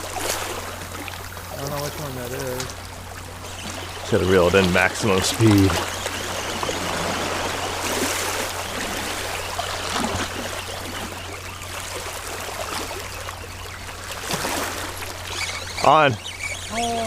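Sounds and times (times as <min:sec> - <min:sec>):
seawater washing over rocks: 0:00.0 - 0:16.9.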